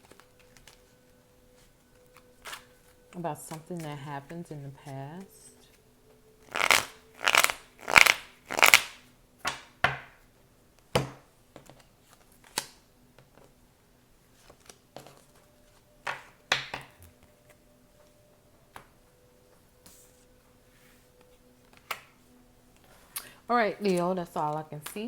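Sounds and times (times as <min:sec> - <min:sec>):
cards being shuffled: 0:00.0 - 0:04.9, 0:06.4 - 0:09.6, 0:11.6 - 0:12.8
cards snapping down: 0:06.5 - 0:09.7, 0:11.7 - 0:12.8.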